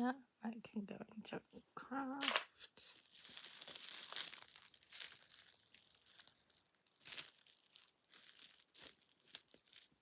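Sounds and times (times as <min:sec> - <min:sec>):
rustling of jewellery packaging: 0:03.0 - 0:10.0.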